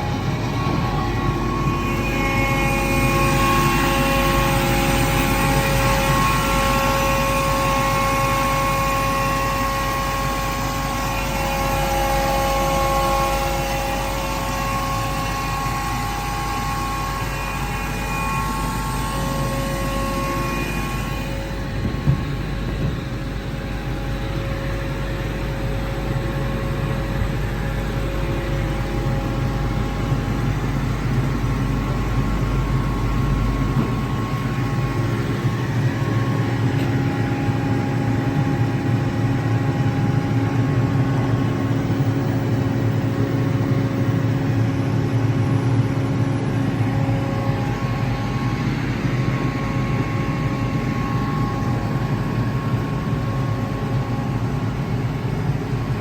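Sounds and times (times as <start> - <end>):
air compressor running: 0.0 - 56.0
faint whining tones: 0.0 - 56.0.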